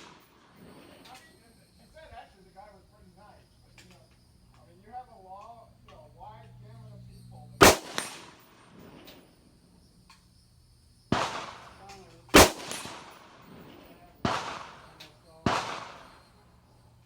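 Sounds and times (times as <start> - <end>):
rifle shots echoing: 0.0 - 1.3, 7.6 - 9.4, 11.1 - 16.4.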